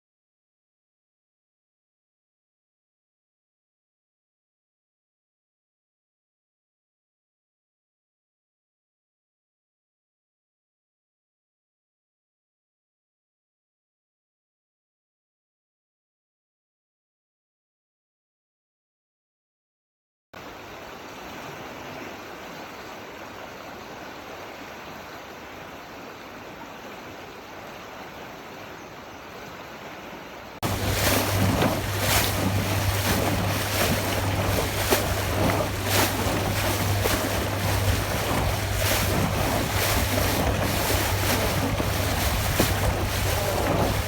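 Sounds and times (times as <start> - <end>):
running water: 20.4 - 44.0
waterfall rushing: 30.6 - 44.0
wind buffeting microphone: 30.6 - 44.0.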